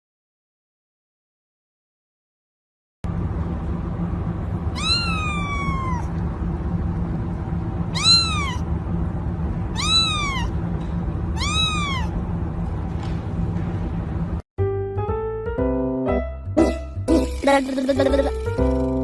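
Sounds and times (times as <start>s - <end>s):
steady low hum: 3.0s - 14.4s
cat meowing: 4.7s - 6.2s, 7.9s - 8.7s, 9.7s - 10.6s, 11.4s - 12.2s.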